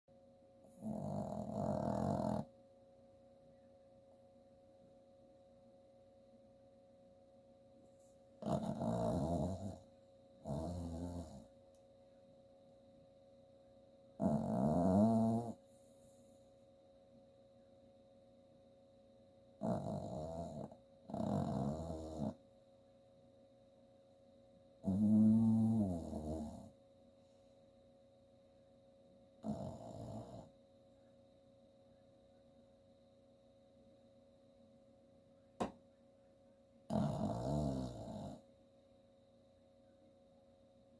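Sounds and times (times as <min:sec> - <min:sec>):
faint steady hum: 0:00.1 - 0:40.9
dog snoring: 0:00.6 - 0:02.5, 0:08.4 - 0:11.5, 0:14.2 - 0:15.6, 0:19.6 - 0:22.4, 0:24.8 - 0:26.8, 0:29.4 - 0:30.5, 0:36.9 - 0:38.5.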